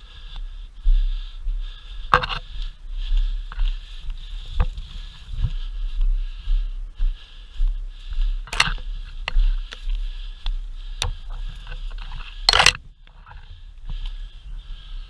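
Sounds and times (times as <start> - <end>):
rustling and scraping of gear: 2.1 - 5.8, 8.3 - 14.6
sharp clicks: 8.5 - 9.8, 12.4 - 13.2.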